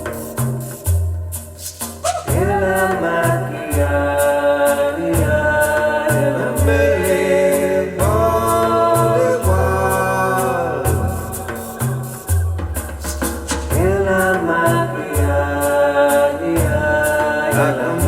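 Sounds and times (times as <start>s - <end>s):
high percussion ticks: 0.0s - 18.0s
repeating bass line: 1.8s - 4.1s, 8.0s - 15.4s
person singing: 2.0s - 18.0s.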